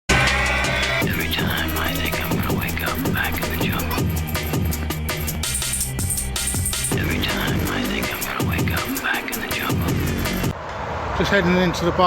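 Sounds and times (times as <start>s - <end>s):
music with heavy bass line: 0.1s - 10.6s
vocal-like line: 1.0s - 4.7s, 6.7s - 10.2s.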